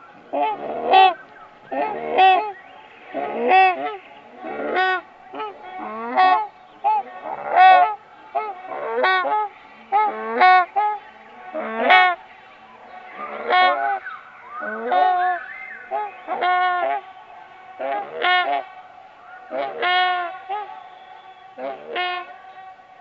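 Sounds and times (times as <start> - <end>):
harsh honking calls: 13.1 - 23.0.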